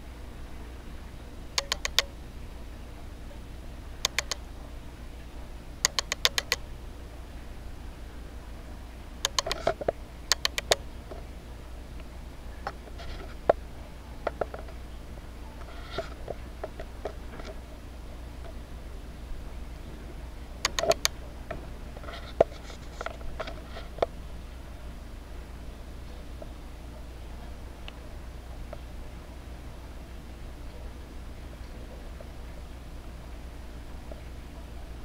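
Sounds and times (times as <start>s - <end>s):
sharp clicks: 1.6s - 2.1s, 4.0s - 4.5s, 5.8s - 6.6s, 9.2s - 10.8s, 20.6s - 21.6s.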